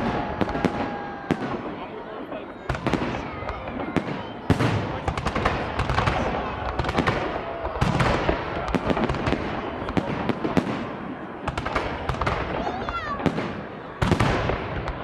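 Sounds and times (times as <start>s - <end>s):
fireworks booms: 0.0s - 15.0s
fireworks crackling and popping: 0.0s - 15.0s.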